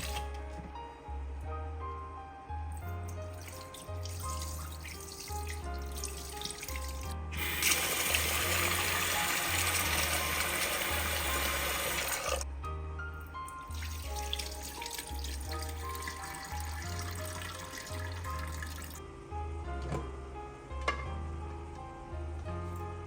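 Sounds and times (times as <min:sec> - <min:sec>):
tap water running into sink: 0:00.0 - 0:00.4, 0:03.0 - 0:12.4, 0:13.7 - 0:19.0
background music: 0:00.0 - 0:23.0.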